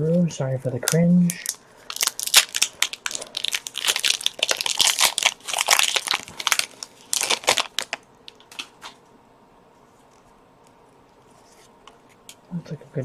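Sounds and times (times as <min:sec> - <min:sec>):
foil wrapper crinkling: 0:00.8 - 0:09.0.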